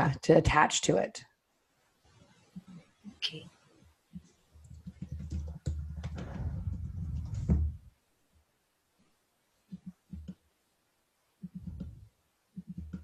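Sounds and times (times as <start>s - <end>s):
muffled knocks on a desk: 4.9s - 7.8s.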